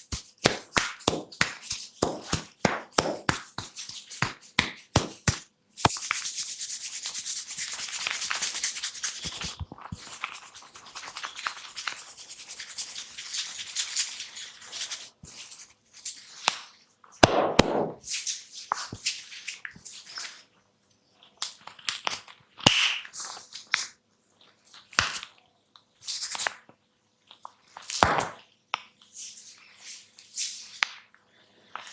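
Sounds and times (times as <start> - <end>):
scratching and rubbing hair: 0.0 - 16.4.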